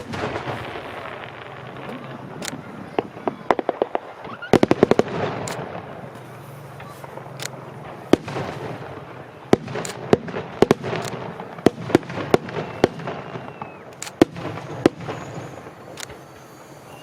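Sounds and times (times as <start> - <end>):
crackling rumble: 0.0 - 17.0
fireworks bangs: 0.0 - 17.0
faint whistle of rising shell: 12.3 - 17.0.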